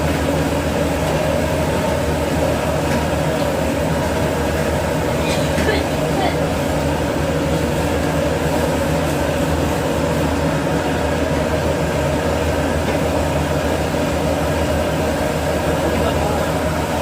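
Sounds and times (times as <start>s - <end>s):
exhaust hood running: 0.0s - 17.0s
gas wok burner roaring: 0.0s - 17.0s.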